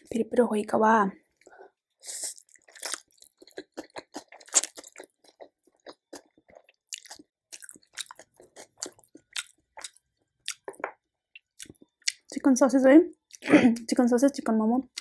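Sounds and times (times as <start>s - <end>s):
person chewing food: 1.3s - 12.3s, 13.2s - 13.4s.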